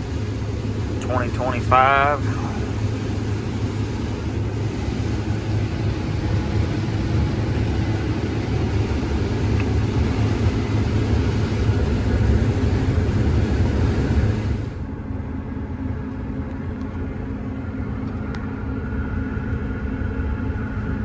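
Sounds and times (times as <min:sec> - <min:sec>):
combine harvester running: 0:00.0 - 0:14.9.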